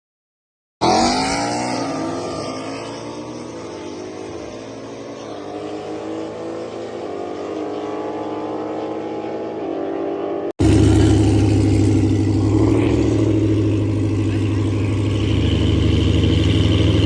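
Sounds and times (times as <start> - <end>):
car engine running: 10.6 - 17.0.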